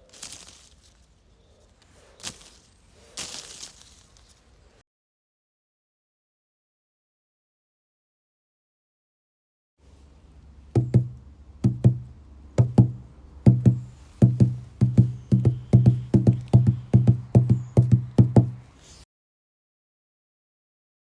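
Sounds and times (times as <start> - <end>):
heartbeat thumps: 10.8 - 18.6.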